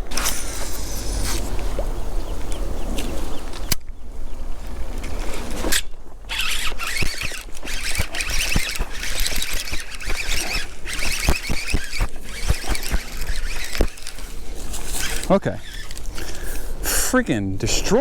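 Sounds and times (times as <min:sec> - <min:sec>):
wind rumble on microphone: 0:00.0 - 0:06.9
fishing reel cranking: 0:06.3 - 0:16.6.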